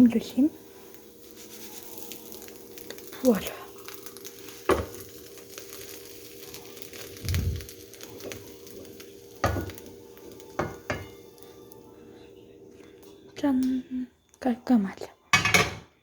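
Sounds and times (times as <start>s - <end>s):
faint sizzle: 0.0s - 16.0s
steady hum: 2.6s - 14.1s.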